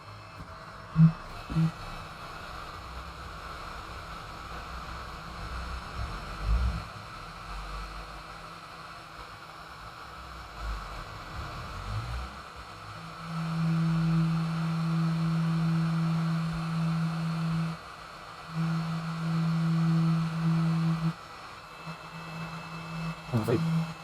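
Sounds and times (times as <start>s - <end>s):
steady background hiss: 11.4s - 24.0s.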